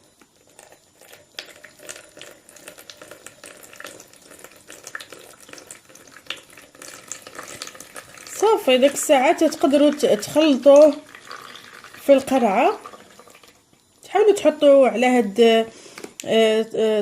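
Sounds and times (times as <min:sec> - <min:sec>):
liquid trickling from bottle: 0:00.5 - 0:08.5, 0:09.3 - 0:13.7.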